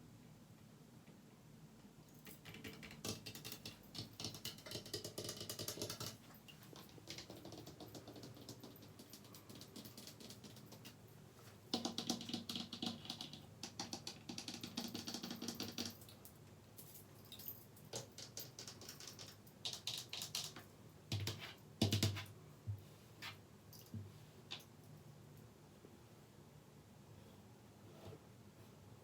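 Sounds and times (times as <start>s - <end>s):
quick tapping and scratching: 2.2s - 11.0s, 11.7s - 16.1s, 17.9s - 22.3s.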